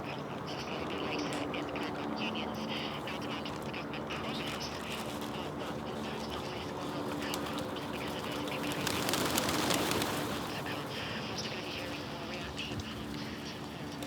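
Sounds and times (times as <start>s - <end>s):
birds calling: 0.0s - 14.0s.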